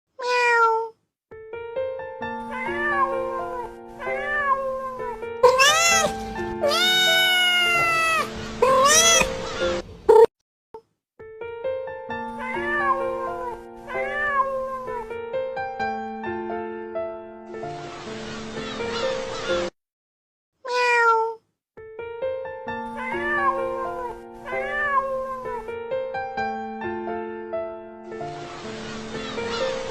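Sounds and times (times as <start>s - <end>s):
cat meowing: 0.2s - 1.0s, 2.4s - 10.3s, 12.3s - 15.2s, 20.6s - 21.4s, 22.9s - 25.8s
background music with held notes: 1.3s - 10.1s, 11.2s - 19.7s, 21.8s - 29.9s.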